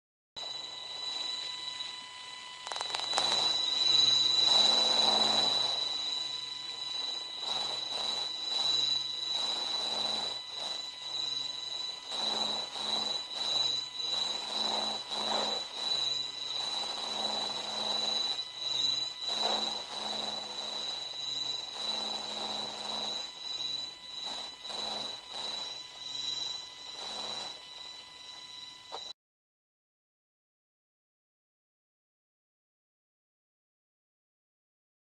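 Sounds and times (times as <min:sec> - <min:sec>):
steady high whine: 0:00.4 - 0:29.2
eerie rumbling space drone: 0:02.6 - 0:29.0.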